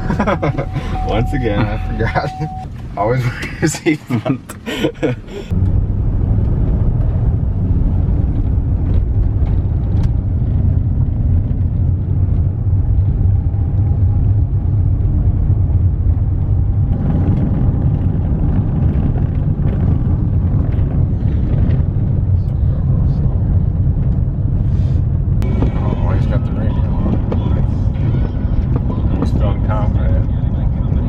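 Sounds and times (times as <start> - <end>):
truck engine and road rumble: 0.0 - 31.0.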